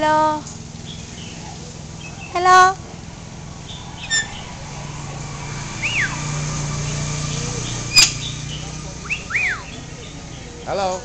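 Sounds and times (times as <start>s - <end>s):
bird whistling: 4.0s - 4.5s, 5.8s - 6.3s, 7.7s - 9.8s.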